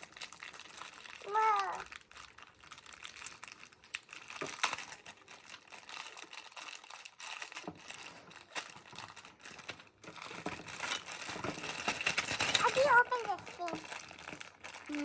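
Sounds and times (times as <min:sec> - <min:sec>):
packaging crinkling and rustling: 0:00.0 - 0:15.0
toy pieces clicking: 0:04.2 - 0:15.0.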